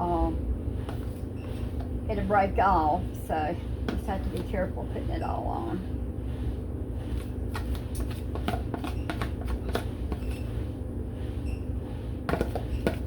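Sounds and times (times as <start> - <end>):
steady low hum: 0.0 - 13.0
spoon scraping a mixing bowl: 7.0 - 10.7, 11.3 - 13.0.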